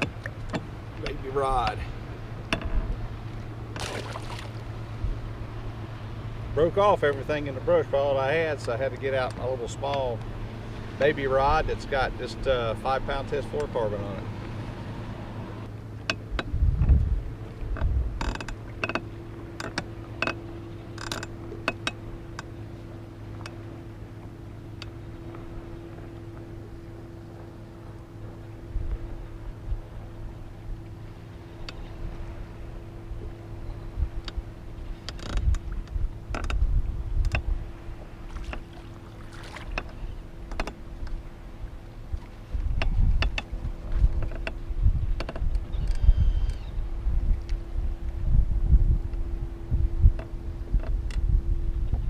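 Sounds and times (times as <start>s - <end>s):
light clicks and knocks: 0.0s - 1.3s, 39.6s - 41.2s, 42.7s - 46.6s
low hum: 0.0s - 52.0s
wind rumbling on microphone: 0.0s - 52.0s
gear clicks and knocks: 2.5s - 3.0s, 17.7s - 20.4s, 21.0s - 22.5s, 34.2s - 37.5s, 39.5s - 41.2s, 42.7s - 46.6s.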